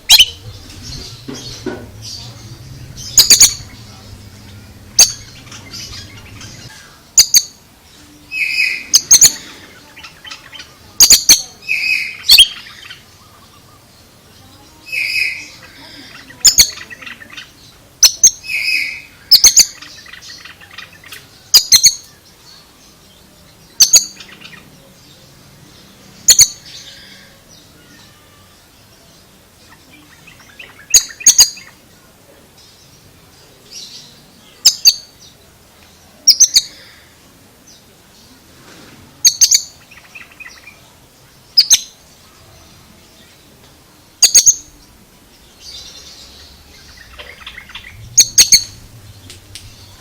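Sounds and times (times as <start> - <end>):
bird calling high sharp notes: 0.0 - 7.6
soft bird twittering: 0.0 - 50.0.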